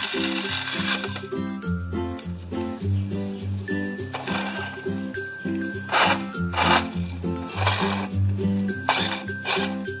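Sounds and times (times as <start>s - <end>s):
upbeat background music: 0.0s - 10.0s.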